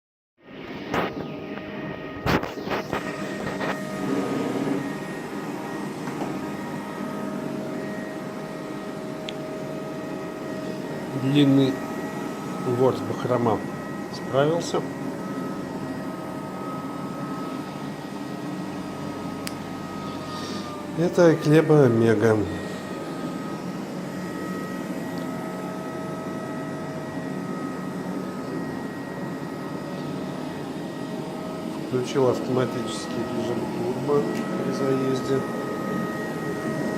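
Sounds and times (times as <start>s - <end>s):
robot vacuum humming on carpet: 0.8s - 36.9s
thin whining tones: 1.0s - 36.9s
robot vacuum whirring: 2.3s - 8.8s.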